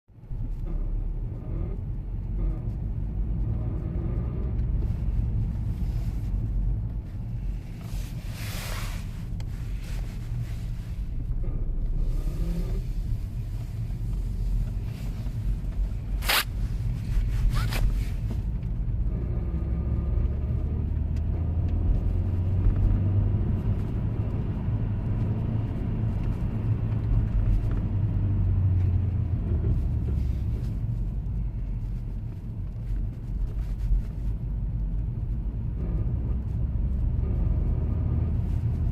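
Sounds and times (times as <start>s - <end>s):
drivetrain grinding rumble: 0.1s - 38.9s
car accelerating: 0.4s - 31.0s, 35.2s - 38.9s.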